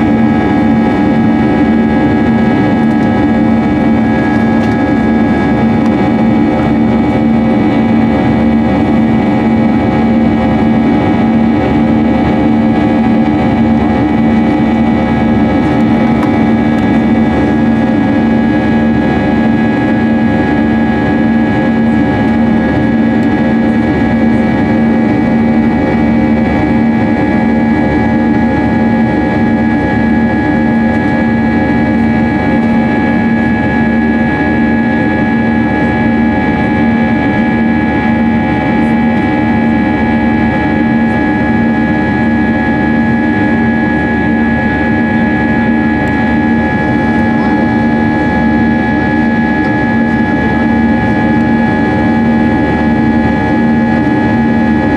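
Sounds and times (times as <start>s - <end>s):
jet engines droning in cabin: 0.0s - 54.9s.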